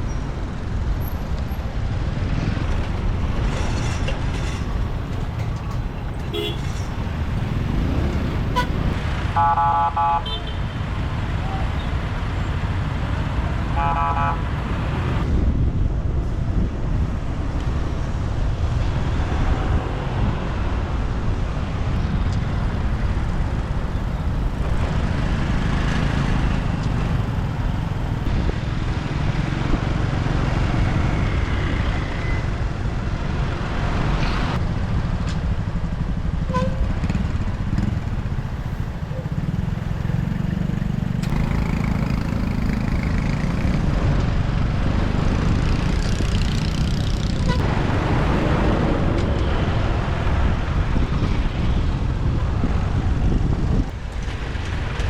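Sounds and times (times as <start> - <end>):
city traffic: 0.0 - 55.0
vehicle horn toot: 6.2 - 6.9, 8.5 - 8.8, 9.4 - 10.8, 13.8 - 14.5, 36.5 - 36.9
motorbike engine: 36.5 - 43.9.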